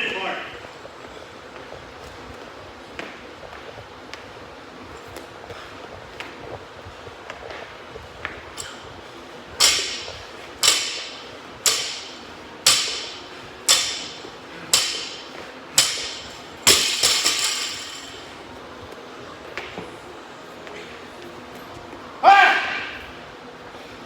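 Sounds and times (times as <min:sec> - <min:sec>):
metal clanking: 0:09.6 - 0:18.4.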